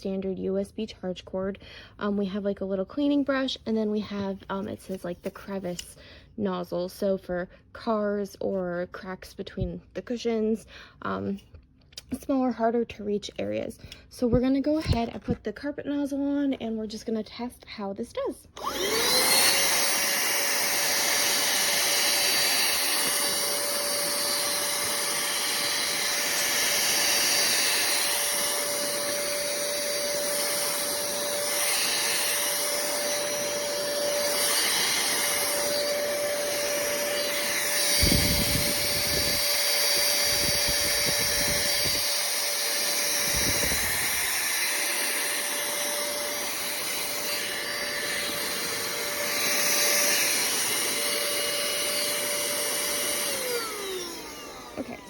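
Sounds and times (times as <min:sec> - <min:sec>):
handheld vacuum running: 0:18.5 - 0:55.0.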